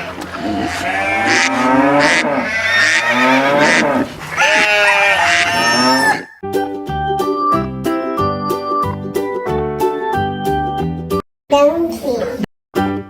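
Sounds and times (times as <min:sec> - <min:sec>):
horse neighing: 0:00.0 - 0:06.4.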